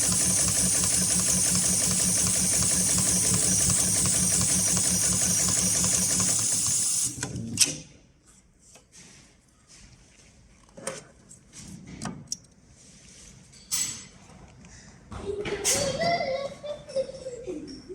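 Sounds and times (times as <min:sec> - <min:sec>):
sewing machine running: 0:00.0 - 0:07.3.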